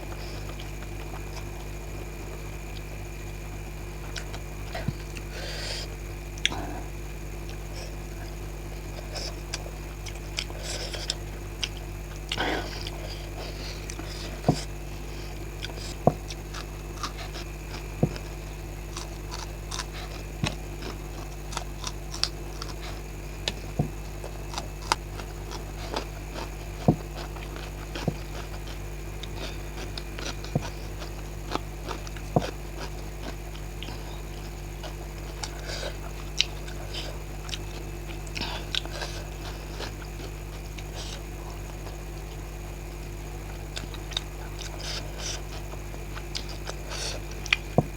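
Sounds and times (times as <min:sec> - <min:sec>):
steady low hum: 0:00.0 - 0:47.9
crunchy bites: 0:04.0 - 0:42.5.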